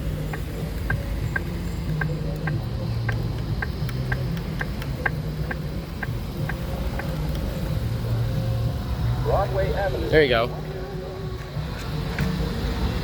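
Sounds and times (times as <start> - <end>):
pedestrian signal ticking: 0.0 - 8.9
traffic noise: 0.0 - 13.0.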